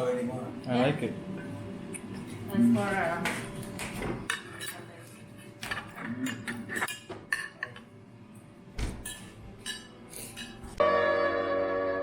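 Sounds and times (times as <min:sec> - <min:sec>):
cutlery and dishes clinking: 0:03.8 - 0:07.9, 0:09.0 - 0:10.8.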